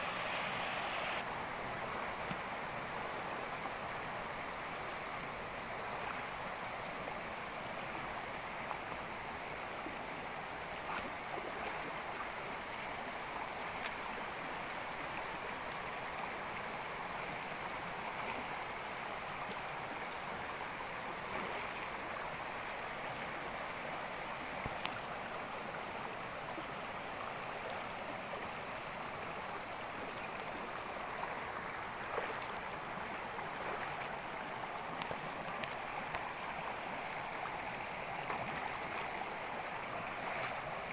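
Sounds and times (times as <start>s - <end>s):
stream rushing: 0.0s - 6.9s, 18.8s - 40.9s.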